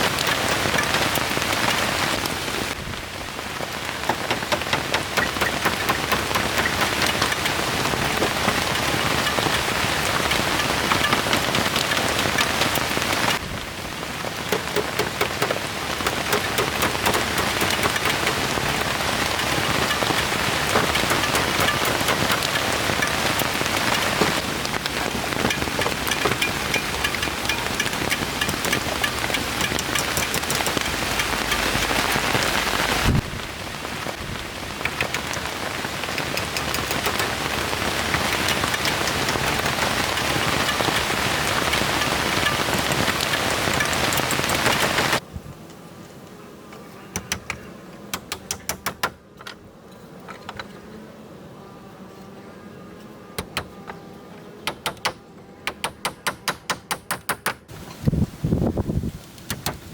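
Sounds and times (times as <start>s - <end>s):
rain falling: 0.0s - 45.2s.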